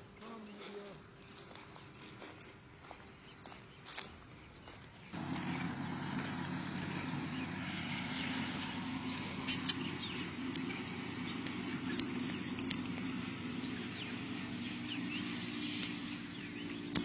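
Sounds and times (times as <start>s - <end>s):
steady engine drone: 5.0s - 17.0s.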